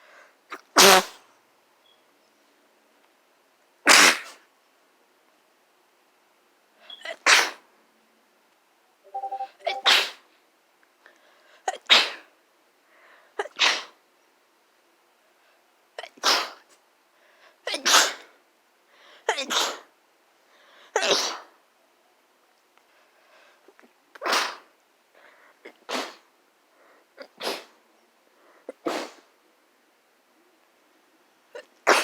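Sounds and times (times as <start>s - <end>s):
person sneezing: 13.4s - 14.0s, 21.0s - 21.5s, 28.7s - 29.2s.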